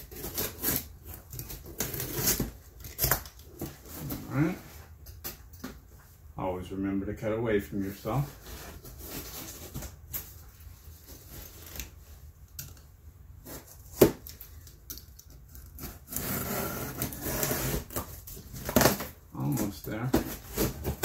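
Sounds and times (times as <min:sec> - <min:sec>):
box cutter slicing cardboard: 0:00.0 - 0:03.3, 0:15.7 - 0:21.0.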